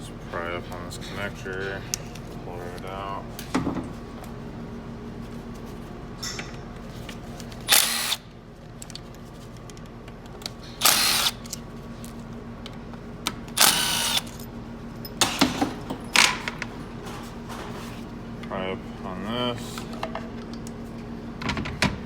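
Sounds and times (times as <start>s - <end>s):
power drill spinning in bursts: 7.7s - 8.2s, 10.8s - 11.4s, 13.6s - 14.4s.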